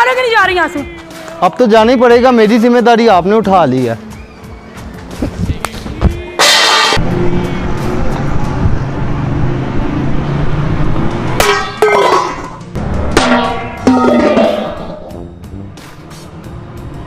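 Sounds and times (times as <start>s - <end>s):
music with drums: 0.0s - 7.0s.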